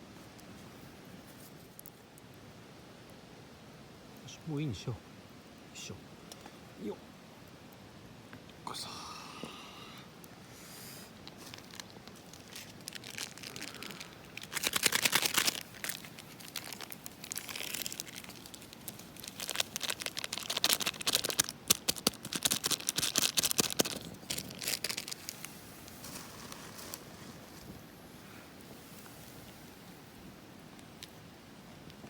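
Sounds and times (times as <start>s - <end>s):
plastic packaging crinkling: 11.2s - 27.5s.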